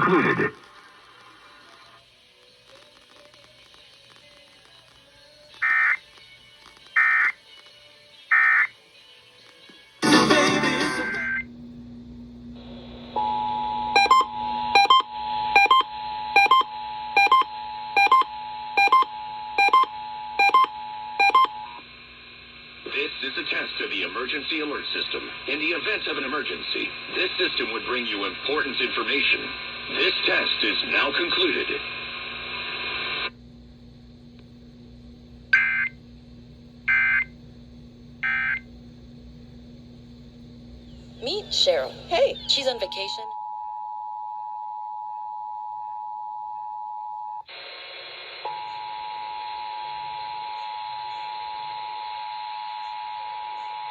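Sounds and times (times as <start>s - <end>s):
two-tone alarm: 13.2s - 21.8s, 38.2s - 38.6s
low steady hum: 28.2s - 43.5s.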